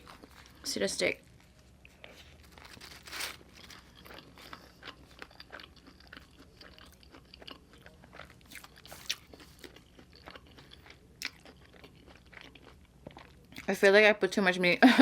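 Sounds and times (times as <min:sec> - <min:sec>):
close chewing with wet clicks: 0:03.8 - 0:13.7.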